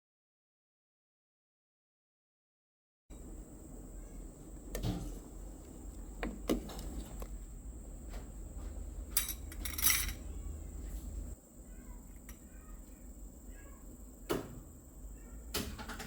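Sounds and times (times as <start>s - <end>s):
steady low hum: 3.1s - 15.8s
handling knocks and clinks: 8.0s - 11.3s
rattling jangle: 9.1s - 10.3s.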